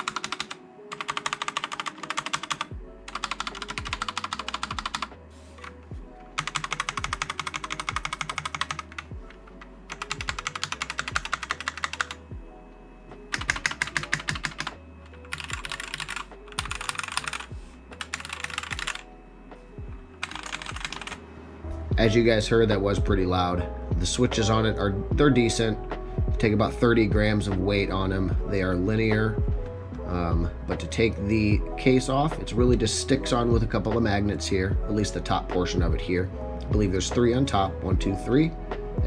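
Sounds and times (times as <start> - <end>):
fast mechanical keyboard typing: 0.0 - 5.1, 6.4 - 12.2, 13.3 - 19.0, 20.2 - 21.2
background music with bass line: 21.6 - 39.0.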